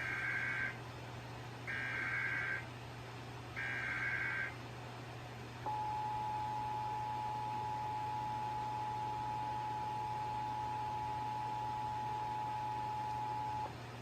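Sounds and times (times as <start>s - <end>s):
screechy data bursts: 0.0s - 0.8s, 1.7s - 2.6s, 3.6s - 4.6s
steady attention tone: 5.6s - 13.7s.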